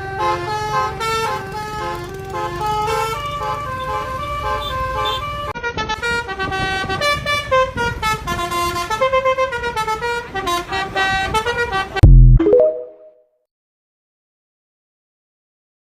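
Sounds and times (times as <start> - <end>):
bus horn playing a tune: 0.0 - 12.0.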